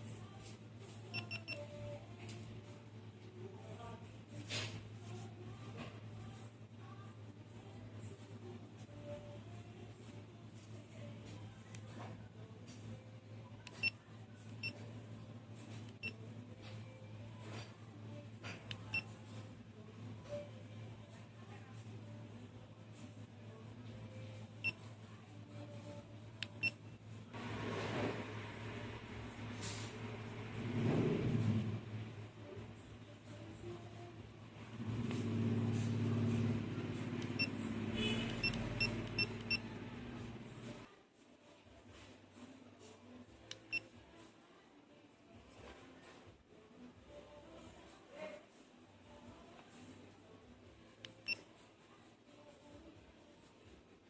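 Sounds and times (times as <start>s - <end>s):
camera electronic beeps: 37.2s - 39.7s.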